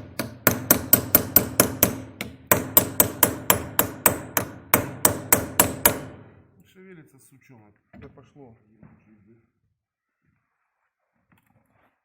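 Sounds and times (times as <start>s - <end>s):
hammer striking metal: 0.0s - 6.4s.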